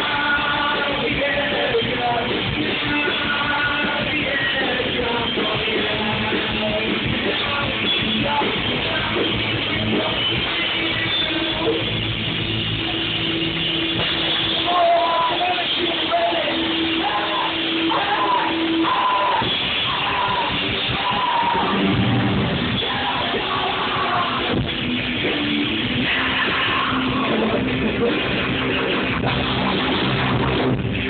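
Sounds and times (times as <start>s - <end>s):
distorted guitars: 0.0s - 31.0s
drums: 0.0s - 31.0s
shouted vocals: 14.5s - 24.6s, 26.0s - 27.7s.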